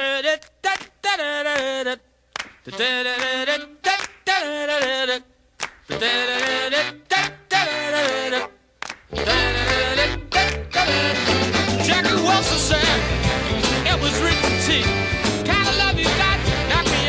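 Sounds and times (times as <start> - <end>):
a cappella singing: 0.0 - 2.1, 2.7 - 17.0
hand claps or snaps: 0.4 - 1.0, 1.6 - 5.0, 5.6 - 6.6, 8.8 - 9.1, 10.4 - 10.7.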